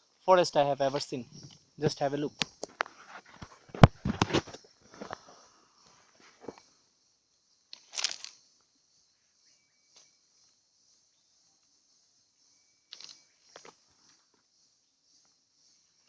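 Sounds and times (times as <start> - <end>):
forest insects droning: 0.0 - 16.0
rustles and knocks: 2.5 - 5.3.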